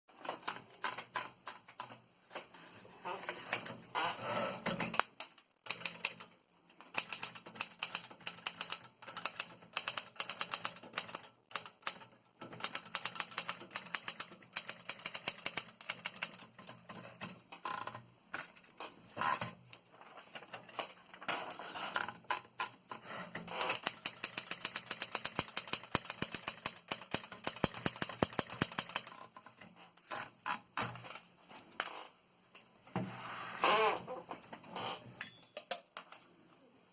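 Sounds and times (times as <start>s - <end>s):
manual typewriter keystrokes: 4.7s - 18.0s, 23.6s - 29.5s.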